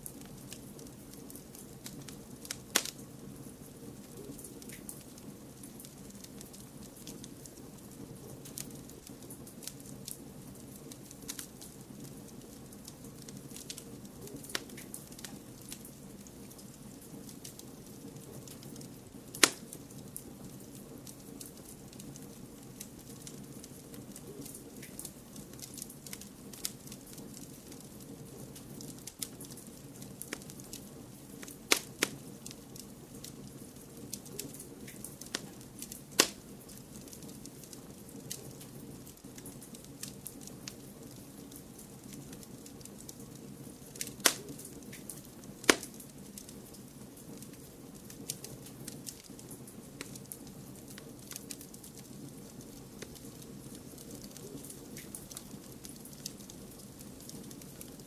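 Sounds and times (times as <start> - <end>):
wood fire crackling: 0.0 - 58.0
sharp loud fire pops: 45.7 - 46.0.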